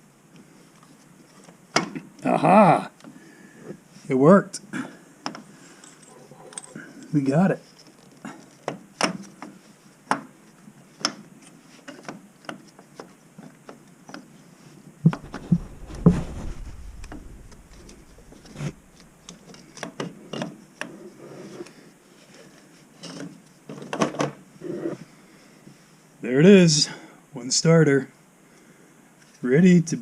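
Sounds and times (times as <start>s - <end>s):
loud thuds: 15.1s - 19.4s.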